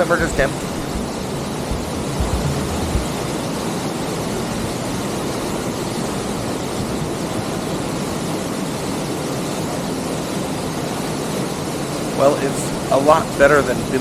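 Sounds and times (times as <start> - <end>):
waterfall rushing: 0.3 - 3.8.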